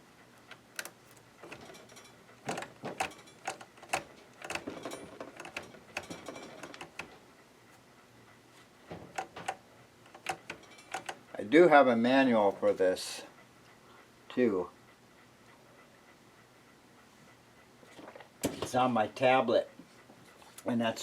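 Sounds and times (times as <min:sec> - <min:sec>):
sewing machine mechanism clicking: 0:00.5 - 0:07.2, 0:09.1 - 0:11.2.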